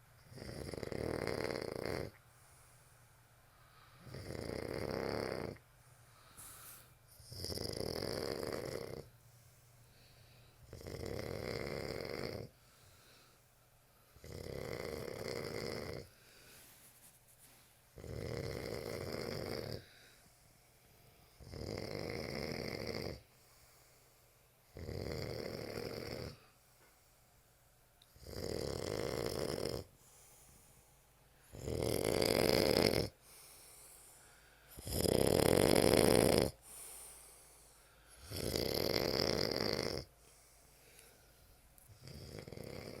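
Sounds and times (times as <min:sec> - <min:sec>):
person snoring: 0:00.2 - 0:02.2, 0:04.0 - 0:05.6, 0:06.4 - 0:09.1, 0:10.6 - 0:12.5, 0:14.2 - 0:16.2, 0:18.0 - 0:20.1, 0:21.4 - 0:23.3, 0:24.7 - 0:26.4, 0:28.2 - 0:30.3, 0:31.5 - 0:33.8, 0:34.7 - 0:37.3, 0:38.1 - 0:40.1, 0:41.9 - 0:43.0
faint breaths: 0:02.1 - 0:04.3, 0:05.5 - 0:07.3, 0:08.7 - 0:10.8, 0:12.4 - 0:14.3, 0:15.4 - 0:18.0, 0:18.6 - 0:21.5, 0:23.2 - 0:24.6, 0:25.8 - 0:27.9, 0:29.8 - 0:31.6, 0:33.1 - 0:34.8, 0:36.5 - 0:38.5, 0:40.0 - 0:43.0.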